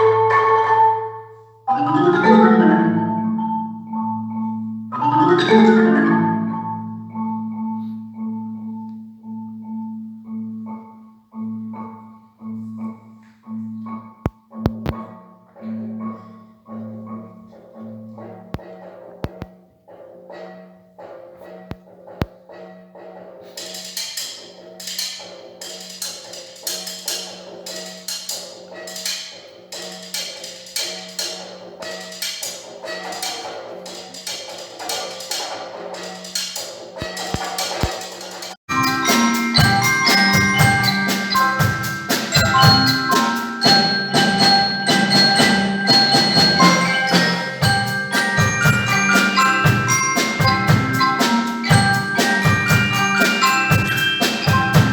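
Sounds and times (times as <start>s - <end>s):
percussion strikes: 0.0s - 7.8s, 23.4s - 54.9s
marimba notes: 0.0s - 18.7s, 23.5s - 54.9s.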